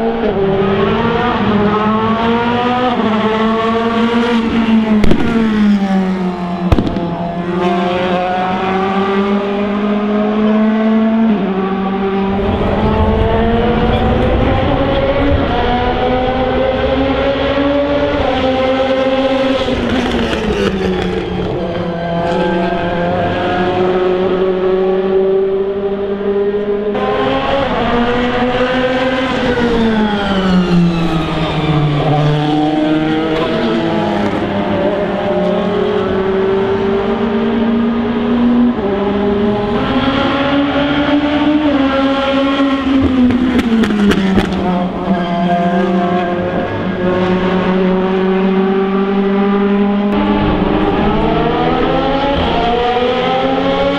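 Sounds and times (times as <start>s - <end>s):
race car engines at high revs: 32.4s - 53.9s.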